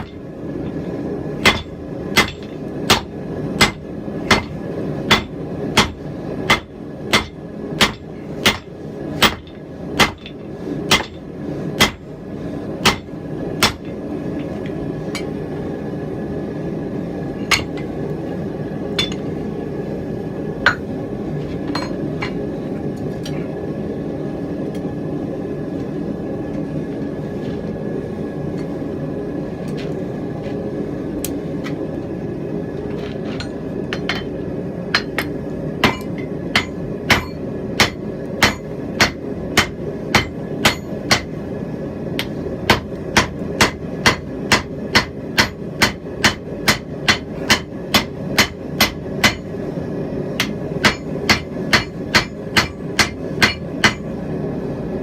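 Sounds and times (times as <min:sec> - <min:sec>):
hammer striking hot steel: 0:00.0 - 0:00.7, 0:01.4 - 0:12.1, 0:12.8 - 0:15.4, 0:17.4 - 0:18.0, 0:18.9 - 0:19.3, 0:20.6 - 0:20.9, 0:21.6 - 0:22.4, 0:33.4 - 0:41.4, 0:42.2 - 0:49.6, 0:50.4 - 0:54.1.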